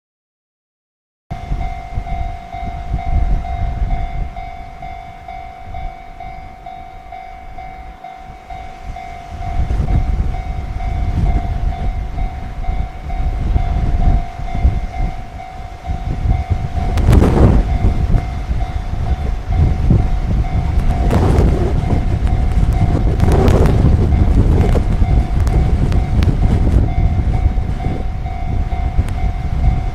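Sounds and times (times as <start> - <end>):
level crossing bell ringing: 1.3 - 21.2, 25.0 - 29.9
freight train rumble: 1.3 - 29.9
wind buffeting microphone: 1.3 - 29.9.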